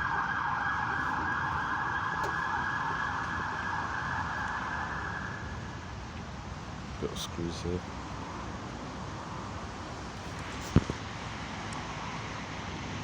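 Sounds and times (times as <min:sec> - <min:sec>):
bus engine running: 0:00.0 - 0:07.2.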